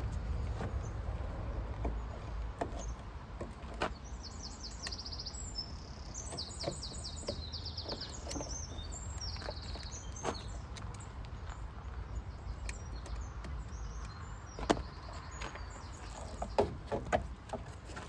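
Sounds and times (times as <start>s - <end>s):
sharp clicks and knocks: 0.0s - 4.0s.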